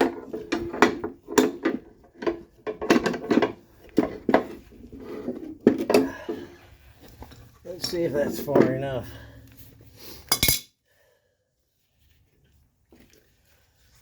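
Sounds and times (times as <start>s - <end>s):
metallic tool clinks and knocks: 10.3s - 10.7s.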